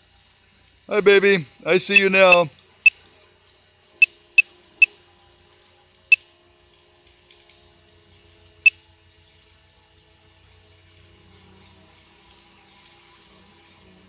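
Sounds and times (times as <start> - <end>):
water dripping into pool: 1.9 - 5.0, 10.9 - 14.0.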